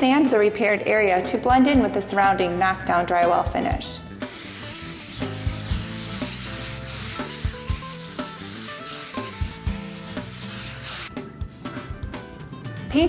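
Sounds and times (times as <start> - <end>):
background music with drum beat: 3.3 - 13.0
sandpaper rasping on drywall: 4.2 - 11.1.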